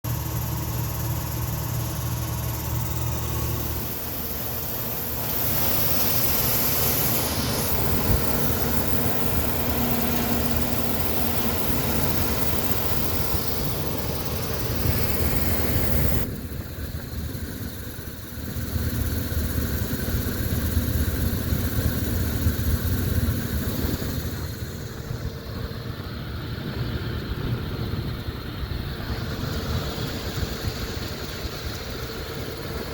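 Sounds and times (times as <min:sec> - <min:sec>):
blower motor humming: 0:00.1 - 0:32.9
motor clicking: 0:01.0 - 0:16.3.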